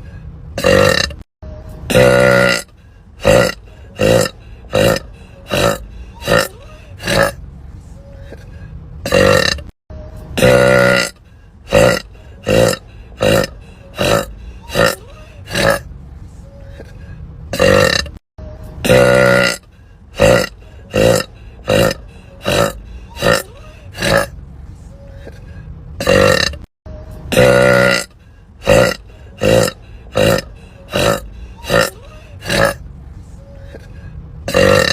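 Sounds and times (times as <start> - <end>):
woman burping: 0.6 - 1.2, 1.9 - 7.4, 9.1 - 9.7, 10.4 - 11.1, 11.7 - 15.8, 17.6 - 18.2, 18.8 - 19.6, 20.2 - 24.3, 26.0 - 26.7, 27.3 - 32.8, 34.5 - 34.9.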